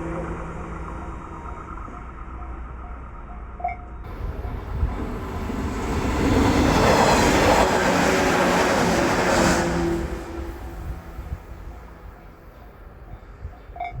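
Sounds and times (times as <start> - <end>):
train wheels rumbling on rails: 4.1 - 14.0.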